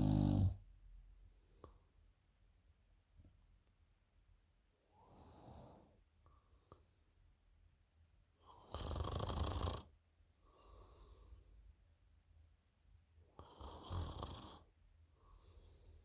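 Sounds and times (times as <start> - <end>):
person snoring: 0.0 - 0.6.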